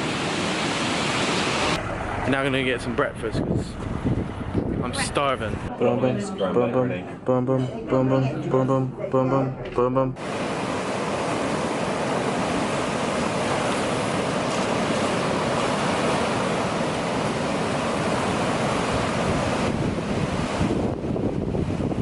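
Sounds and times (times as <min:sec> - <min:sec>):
sea surf washing in: 0:00.0 - 0:05.7, 0:10.2 - 0:22.0
wind buffeting microphone: 0:01.7 - 0:05.7, 0:10.2 - 0:22.0.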